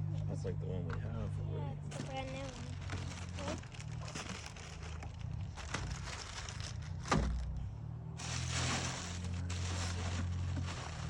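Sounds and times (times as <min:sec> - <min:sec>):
packaging rustling: 0:01.9 - 0:07.5, 0:08.2 - 0:11.0.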